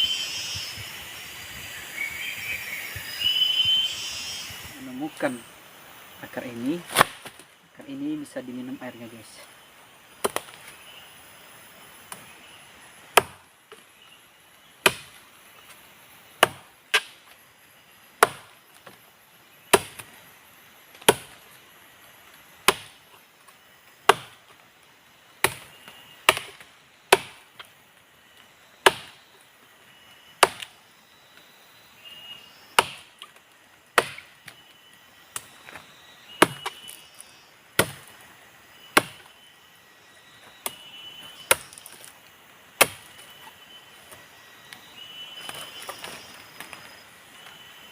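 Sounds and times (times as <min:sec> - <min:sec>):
blade chopping woody vine: 0:06.9 - 0:07.4, 0:10.2 - 0:10.6, 0:13.1 - 0:13.4, 0:14.8 - 0:15.2, 0:16.4 - 0:17.2, 0:18.2 - 0:19.0, 0:19.7 - 0:20.1, 0:21.0 - 0:21.4, 0:22.6 - 0:23.0, 0:24.0 - 0:24.4, 0:25.4 - 0:27.5, 0:28.8 - 0:29.2, 0:30.4 - 0:30.7, 0:32.8 - 0:33.3, 0:34.0 - 0:34.6, 0:36.4 - 0:37.2, 0:37.8 - 0:38.1, 0:38.9 - 0:39.3, 0:42.8 - 0:43.2.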